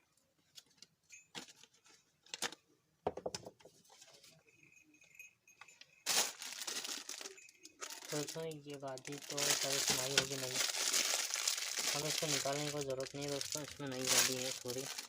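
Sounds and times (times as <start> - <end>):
rustling crinkle: 6.0 - 15.0.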